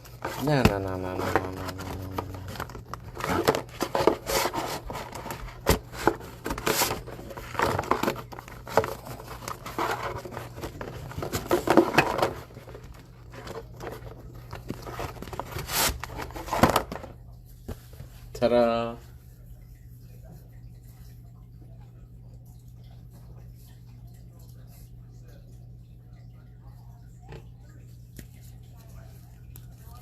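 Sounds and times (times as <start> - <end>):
cards rubbing and sliding: 14.7 - 16.9.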